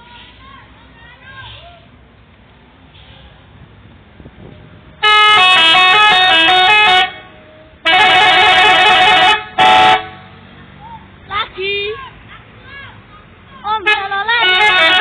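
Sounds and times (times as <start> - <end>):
multi-tone bus horn tune: 5.0 - 10.4, 13.8 - 15.0.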